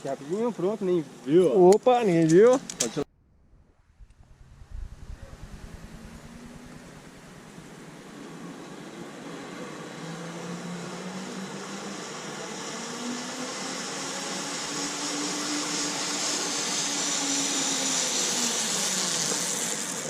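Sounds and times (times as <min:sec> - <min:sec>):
zipline pulley whirring: 0:04.0 - 0:20.0.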